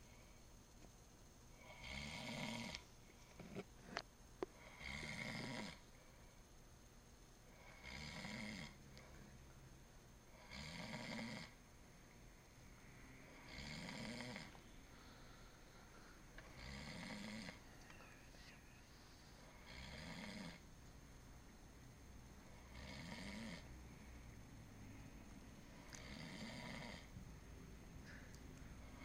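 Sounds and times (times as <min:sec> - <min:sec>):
person snoring: 0:01.6 - 0:02.8, 0:04.6 - 0:05.8, 0:07.5 - 0:08.8, 0:10.3 - 0:11.6, 0:13.2 - 0:15.4, 0:16.5 - 0:17.7, 0:19.4 - 0:20.6, 0:22.5 - 0:23.7, 0:25.8 - 0:27.1.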